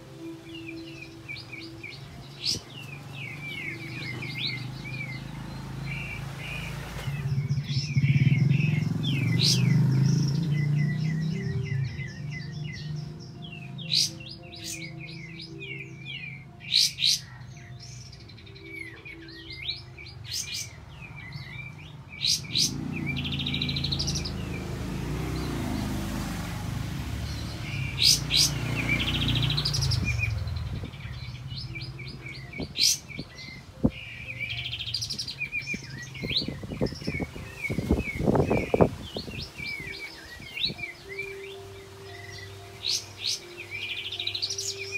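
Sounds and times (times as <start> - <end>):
bird trills: 0.0 - 44.9
bird singing whistled calls: 27.3 - 44.9.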